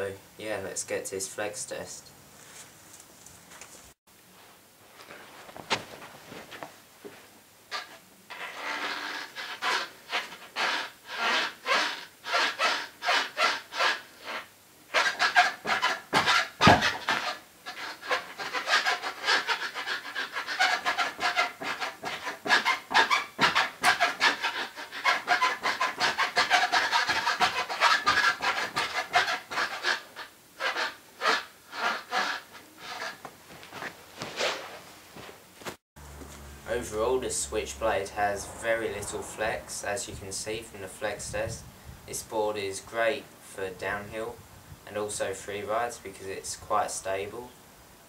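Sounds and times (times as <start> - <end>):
longboard deck creaking: 7.7 - 34.5.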